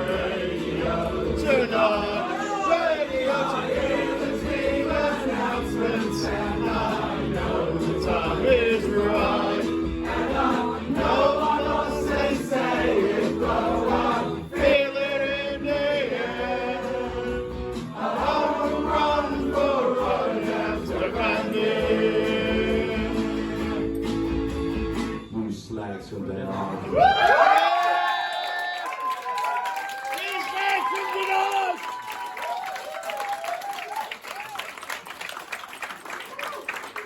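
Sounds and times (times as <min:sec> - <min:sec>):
voices singing held notes: 0:00.0 - 0:24.2
live band music: 0:00.0 - 0:25.4.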